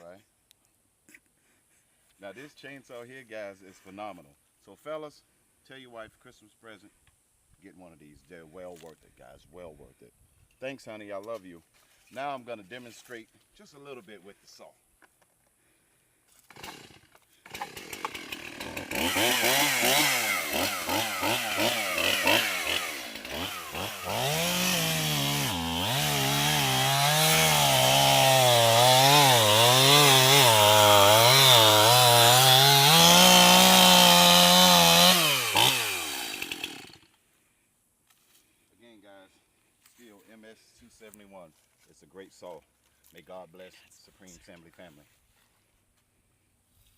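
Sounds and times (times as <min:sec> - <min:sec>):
chainsaw revving: 0:16.4 - 0:37.2.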